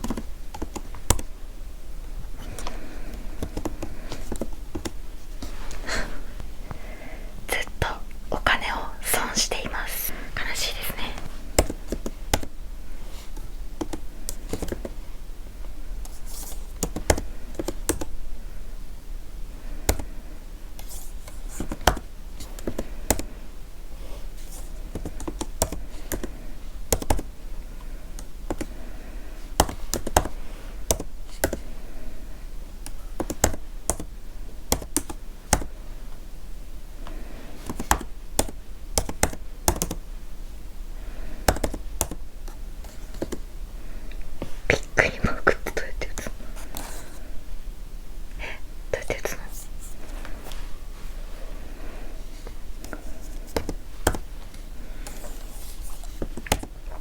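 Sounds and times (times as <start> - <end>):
computer keyboard typing: 0.0 - 1.3, 2.4 - 5.0, 13.8 - 15.0, 16.8 - 18.1, 24.9 - 27.3, 29.6 - 31.7, 32.8 - 34.1, 34.7 - 35.7, 37.6 - 40.0, 41.5 - 42.3.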